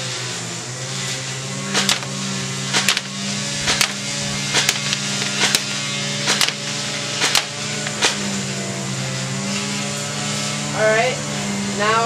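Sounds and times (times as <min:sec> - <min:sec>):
steady low hum: 0:00.0 - 0:12.0
electric airsoft rifle shots: 0:01.6 - 0:09.8.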